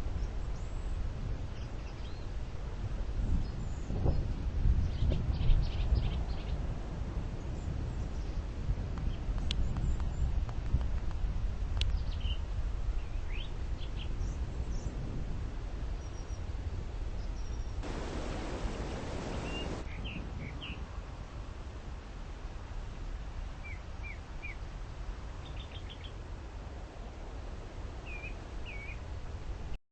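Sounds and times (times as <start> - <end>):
low rumble of wind: 0.0 - 29.8
small birds chirping: 17.2 - 20.8, 25.4 - 26.2
burst of hiss: 17.8 - 19.8.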